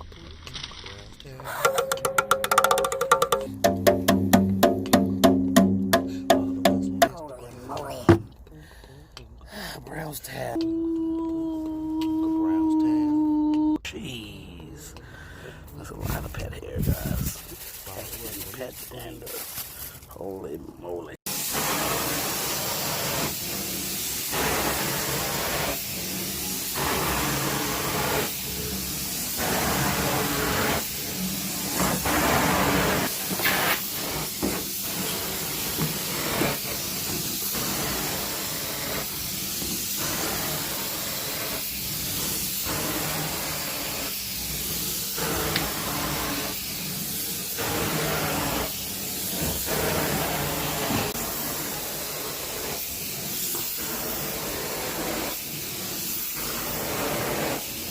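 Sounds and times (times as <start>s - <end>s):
vacuum cleaner on carpet: 21.3s - 57.9s.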